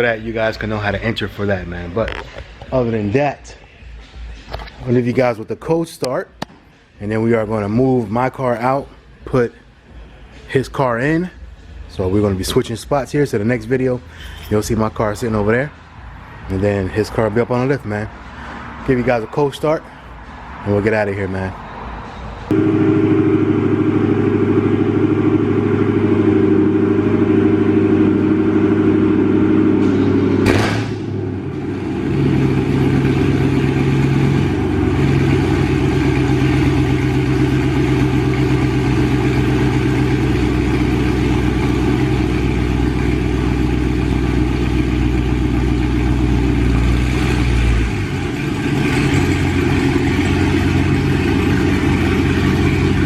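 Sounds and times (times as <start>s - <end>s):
car engine idling: 22.4s - 53.0s.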